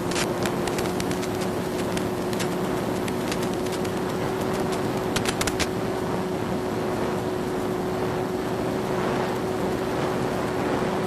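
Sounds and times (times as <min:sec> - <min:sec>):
rushing wind: 0:00.0 - 0:11.0
sharp clicks: 0:00.1 - 0:05.7.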